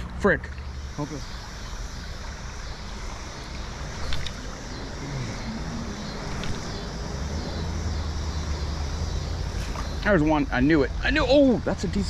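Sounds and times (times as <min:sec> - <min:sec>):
river current rushing: 0:00.6 - 0:11.3
single click: 0:04.1 - 0:04.4, 0:06.4 - 0:06.6.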